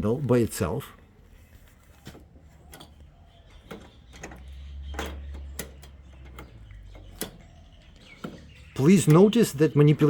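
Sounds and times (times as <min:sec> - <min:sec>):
door lock clicks: 0:02.6 - 0:09.5.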